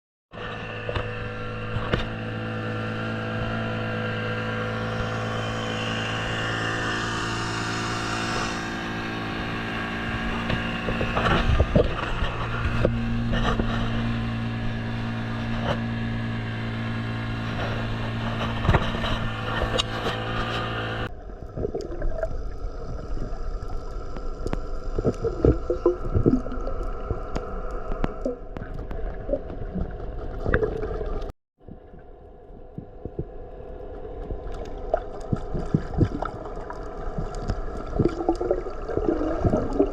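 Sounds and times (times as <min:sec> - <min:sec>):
boat engine running: 0:00.3 - 0:39.9
water gurgling: 0:21.1 - 0:39.9.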